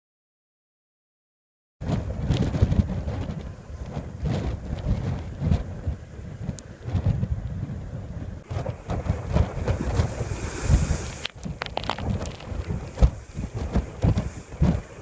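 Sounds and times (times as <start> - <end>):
wind buffeting microphone: 1.8 - 15.0.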